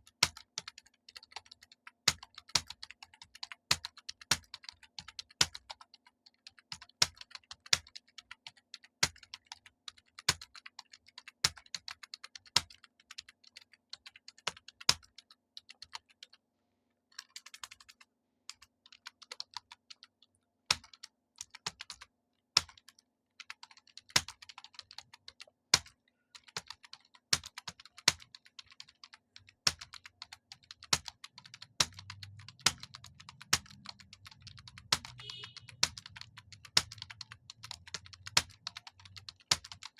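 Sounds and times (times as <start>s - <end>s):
fast typing on computer keyboard: 0.0s - 16.4s, 17.1s - 39.9s.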